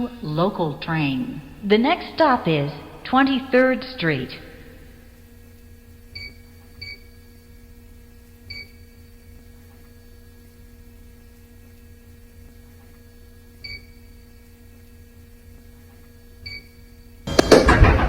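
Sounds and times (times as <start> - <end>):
low electrical hum: 0.0 - 18.0
loud clatter: 17.3 - 18.0.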